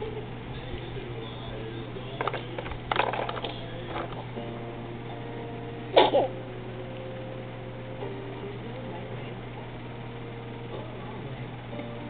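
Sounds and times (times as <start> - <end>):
small knocks and clattering: 2.2 - 4.3.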